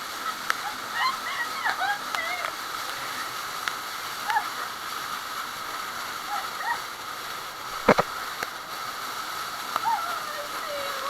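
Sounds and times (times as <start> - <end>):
waterfall stream rushing: 0.0 - 11.0
sharp loud knock: 7.8 - 8.1.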